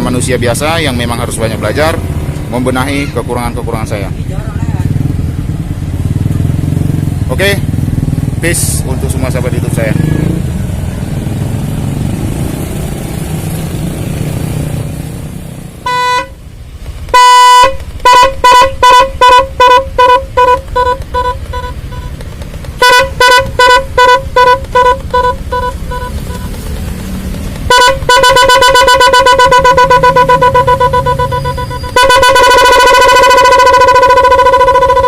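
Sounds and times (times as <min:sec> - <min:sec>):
electronic horn blasts: 0:15.8 - 0:16.4, 0:17.1 - 0:22.2, 0:22.8 - 0:26.7, 0:27.7 - 0:35.0
quick electronic beeps: 0:28.6 - 0:32.2.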